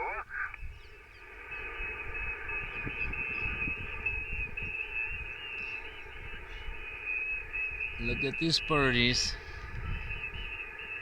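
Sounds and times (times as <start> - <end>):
radio receiver hiss: 0.0 - 4.9
wind rumbling on microphone: 0.0 - 11.0
thin steady whistle: 1.2 - 11.0.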